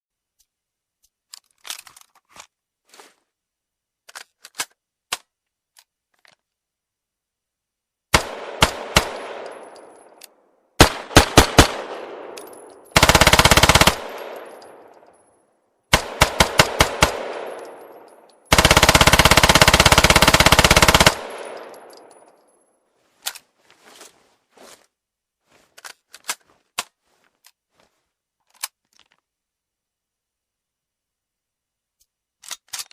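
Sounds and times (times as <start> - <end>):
metallic gun handling clicks: 4.0 - 6.4, 9.3 - 10.4, 12.2 - 13.0, 14.1 - 15.3, 17.3 - 18.5, 21.3 - 22.6, 32.0 - 32.9
submachine gun firing: 8.1 - 9.8, 10.8 - 15.0, 15.9 - 22.1
gunshot echo: 8.2 - 10.0, 10.8 - 12.8, 16.0 - 18.2.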